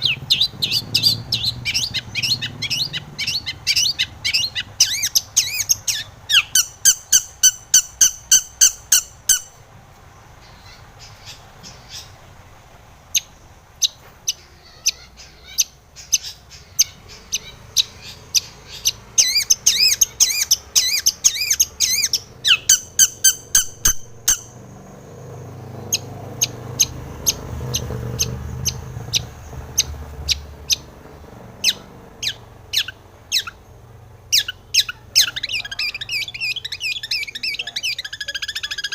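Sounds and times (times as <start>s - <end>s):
shrike calling harsh repeated notes: 0.0s - 9.6s, 14.3s - 24.8s.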